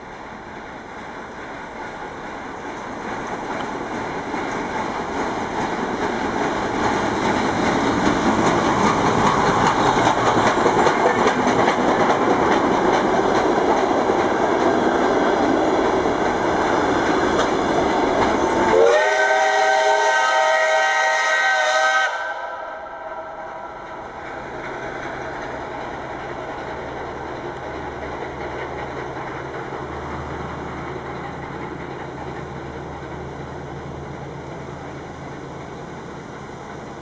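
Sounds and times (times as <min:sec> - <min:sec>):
train wheels clattering on rails: 0:00.0 - 0:20.9, 0:22.6 - 0:37.0
steam whistle: 0:18.7 - 0:23.6.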